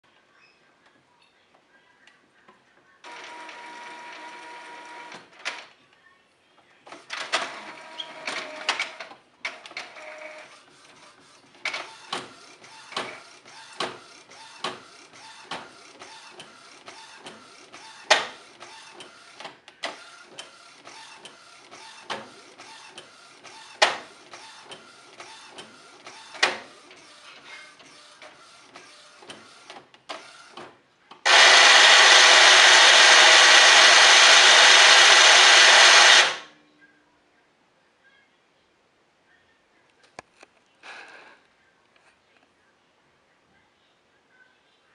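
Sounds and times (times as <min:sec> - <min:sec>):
printer carriage motor whining: 0:03.1 - 0:05.6, 0:31.3 - 0:36.5.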